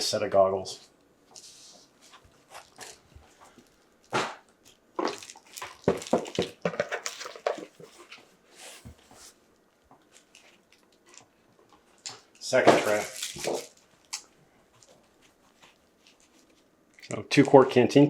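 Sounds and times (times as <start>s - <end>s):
plastic packaging crinkling: 3.6s - 8.0s, 12.0s - 15.0s.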